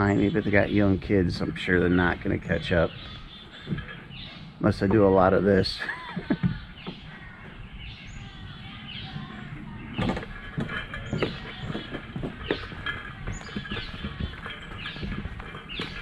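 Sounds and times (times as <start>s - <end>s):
songbirds chirping and singing: 0.0s - 16.0s
footsteps crunching on trail: 10.4s - 16.0s.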